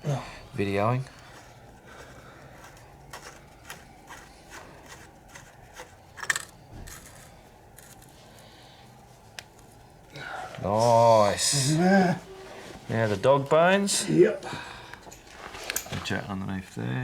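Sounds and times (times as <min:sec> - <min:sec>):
metal parts clicking and scraping: 0:02.6 - 0:08.5.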